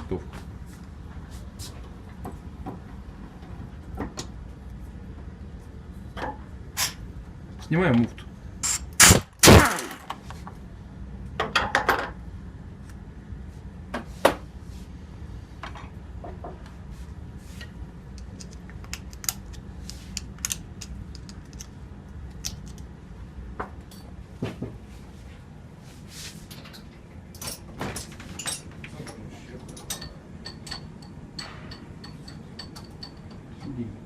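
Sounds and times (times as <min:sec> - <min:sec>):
steady low hum: 0:00.0 - 0:34.0
metal tools clicking and clanking: 0:27.4 - 0:33.8.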